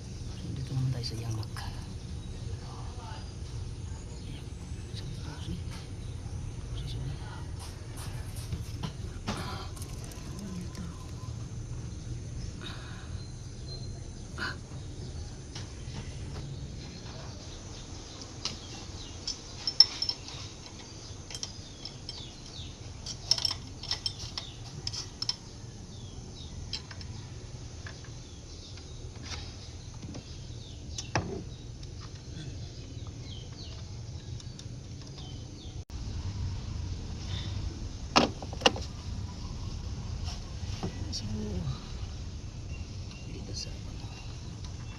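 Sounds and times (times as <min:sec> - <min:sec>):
low steady hum: 0:00.0 - 0:44.9
hand tools clinking on metal: 0:18.4 - 0:25.7.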